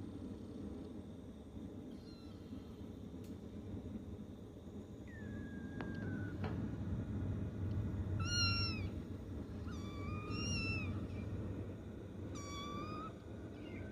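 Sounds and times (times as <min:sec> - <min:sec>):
low background rumble: 0:00.0 - 0:13.9
kittens meowing: 0:01.9 - 0:02.5, 0:05.1 - 0:06.4, 0:08.2 - 0:11.3, 0:12.2 - 0:13.9.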